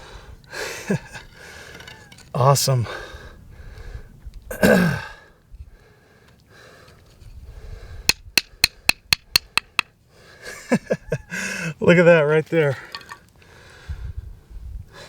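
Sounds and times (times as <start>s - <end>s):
sharp clicks: 8.1s - 9.9s.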